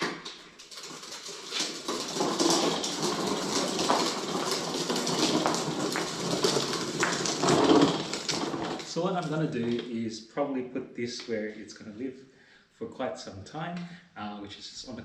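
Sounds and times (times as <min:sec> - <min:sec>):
packaging rustling and crinkling: 0:00.0 - 0:09.8.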